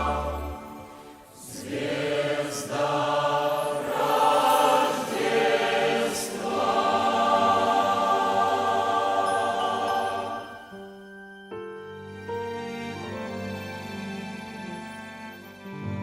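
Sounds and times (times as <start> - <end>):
church choir singing: 0.0 - 10.9.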